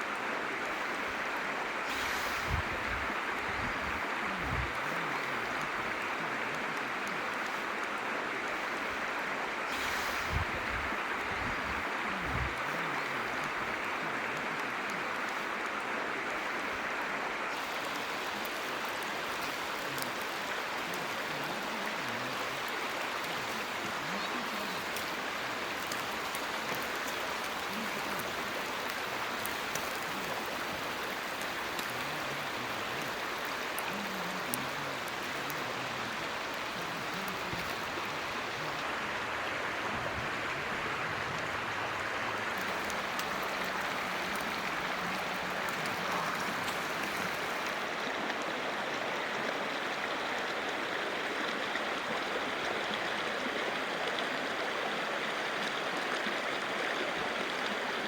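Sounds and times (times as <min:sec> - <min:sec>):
mountain stream flowing: 0:00.0 - 0:58.0
faint ticks: 0:42.4 - 0:48.4.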